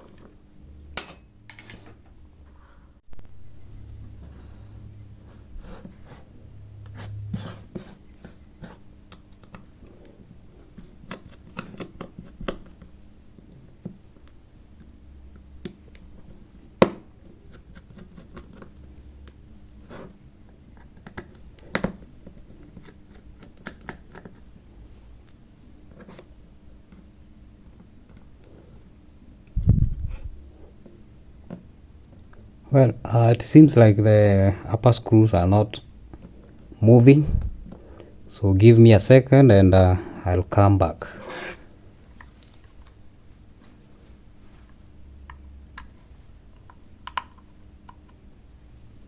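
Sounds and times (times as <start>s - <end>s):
low hum: 2.1s - 7.6s.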